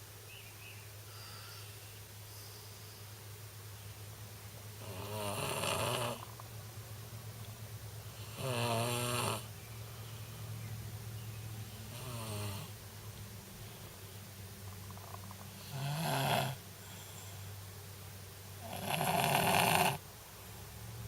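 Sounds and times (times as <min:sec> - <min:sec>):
steady low hum: 0:00.0 - 0:21.0
boy snoring: 0:04.8 - 0:06.3, 0:08.2 - 0:09.5, 0:11.9 - 0:12.8, 0:15.6 - 0:17.4, 0:18.6 - 0:20.0.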